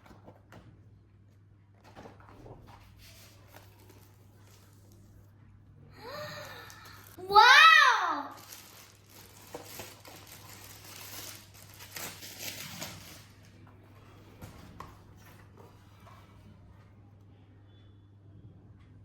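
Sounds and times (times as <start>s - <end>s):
packaging rustling and crinkling: 1.8s - 5.1s, 8.3s - 15.8s.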